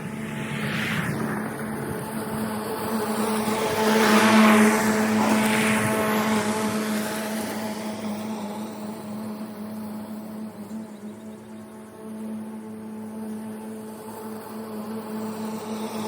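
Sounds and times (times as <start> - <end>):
rushing sound: 0.0 - 6.6
mower motors humming: 0.0 - 16.0.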